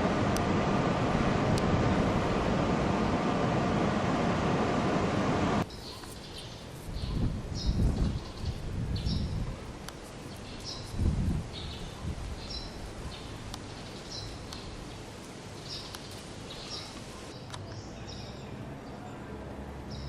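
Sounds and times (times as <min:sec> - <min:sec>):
outdoor background noise: 0:00.0 - 0:20.0
small birds chirping: 0:05.6 - 0:19.2.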